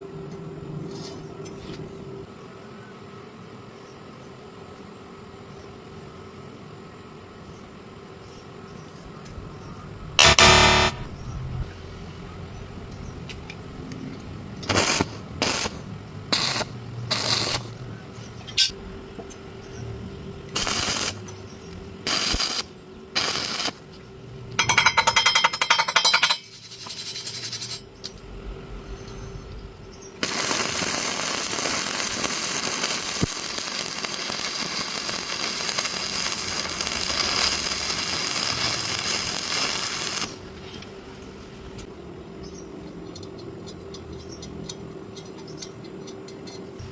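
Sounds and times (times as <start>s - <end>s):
welding arc crackling: 10.2s - 11.2s, 14.6s - 17.9s, 20.5s - 21.3s, 22.0s - 23.9s, 30.2s - 40.5s.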